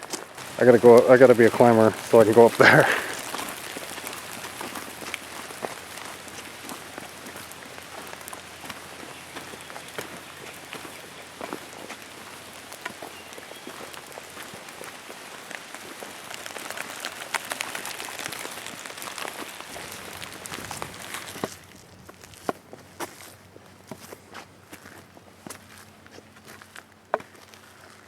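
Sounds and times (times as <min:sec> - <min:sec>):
rain falling: 0:00.0 - 0:21.9
raindrop ticks: 0:00.1 - 0:22.6.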